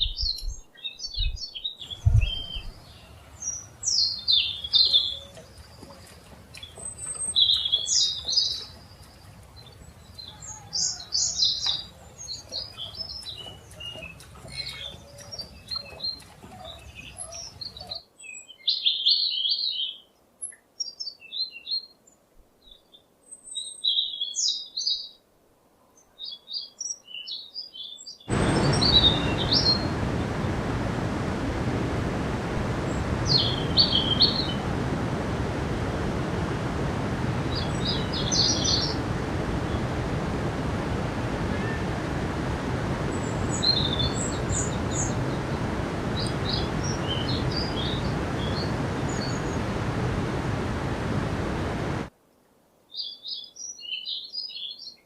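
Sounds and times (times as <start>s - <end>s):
small birds chirping: 0.0s - 22.0s, 26.1s - 52.1s
loud steady rushing noise: 28.3s - 52.1s.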